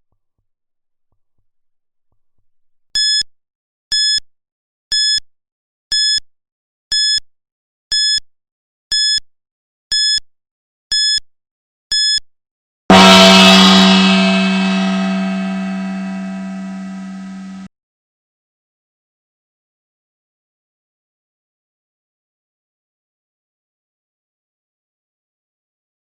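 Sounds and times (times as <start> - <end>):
gong ringing: 12.9 - 17.7.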